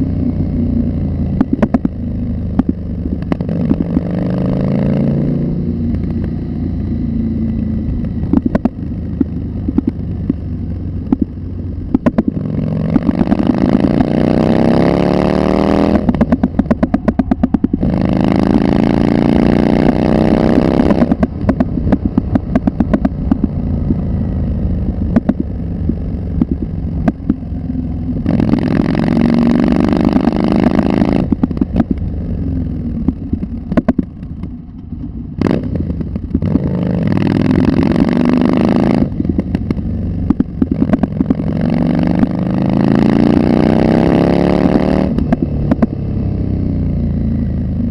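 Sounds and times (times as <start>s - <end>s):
sharp clicks and knocks: 1.2s - 4.1s, 7.4s - 14.2s, 15.9s - 17.9s, 20.7s - 24.0s, 25.0s - 27.5s, 30.0s - 32.1s, 33.0s - 36.6s, 39.2s - 41.5s, 45.0s - 46.0s.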